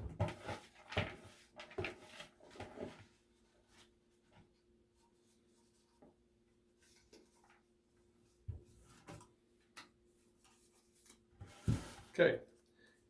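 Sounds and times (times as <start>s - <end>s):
handling rustles and knocks: 0.0s - 4.5s, 8.4s - 12.2s.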